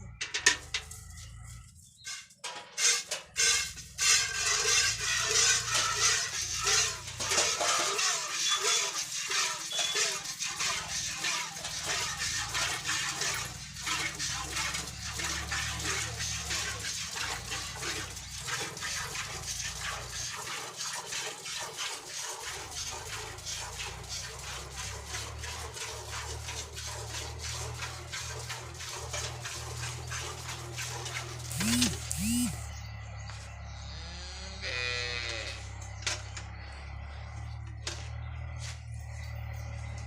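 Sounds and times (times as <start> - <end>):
milk squirting into a pail: 3.4 - 32.2.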